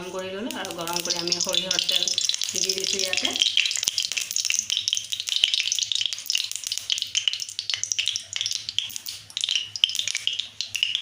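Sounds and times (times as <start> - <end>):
oil sizzling and crackling: 0.0 - 11.0.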